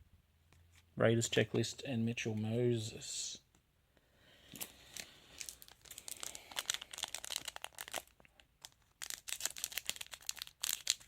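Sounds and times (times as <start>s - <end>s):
wrapper tearing and crinkling: 4.9s - 11.0s.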